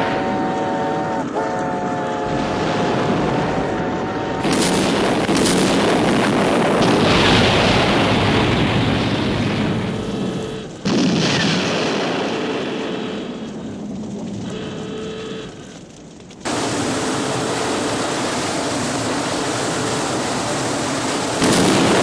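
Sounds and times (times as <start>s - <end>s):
explosion blasts: 2.3s - 14.8s, 16.4s - 22.0s.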